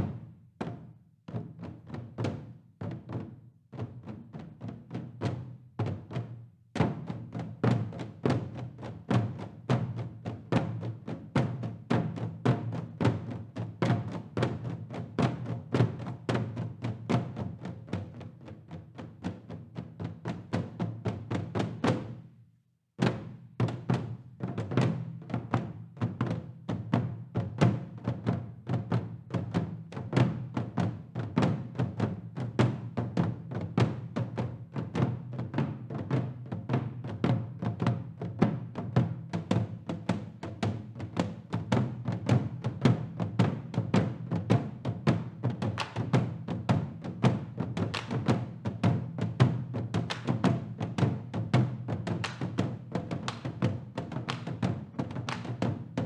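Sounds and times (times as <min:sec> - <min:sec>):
drumming ensemble: 0:00.0 - 0:22.2, 0:23.0 - 0:56.0
drum ensemble playing fast rhythm: 0:41.7 - 0:56.0.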